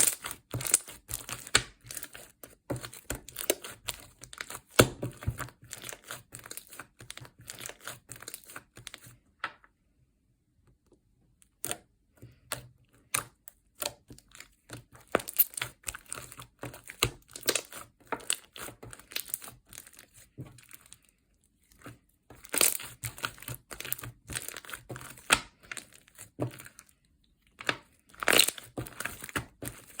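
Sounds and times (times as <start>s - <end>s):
slime crackling and popping: 15.1s - 19.9s, 22.4s - 26.2s, 28.2s - 30.0s.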